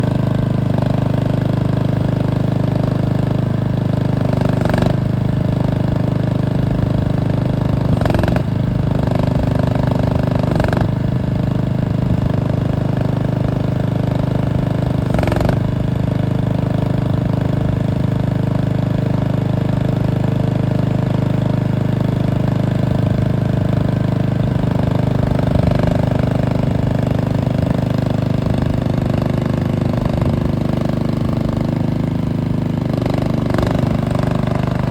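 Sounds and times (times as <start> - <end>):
gasoline engine running: 0.0 - 34.9.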